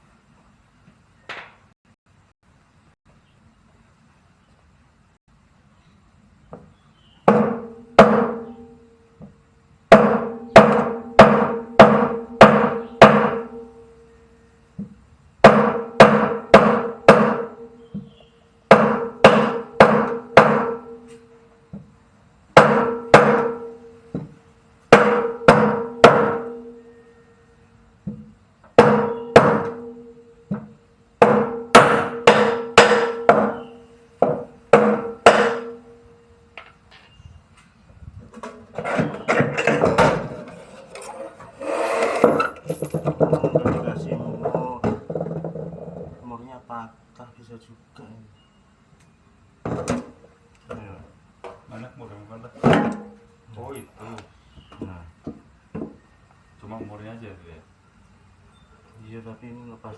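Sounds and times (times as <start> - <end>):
hammer blows on metal ringing: 9.9 - 14.6, 15.4 - 21.8, 22.6 - 24.3, 24.9 - 27.5, 28.8 - 36.4.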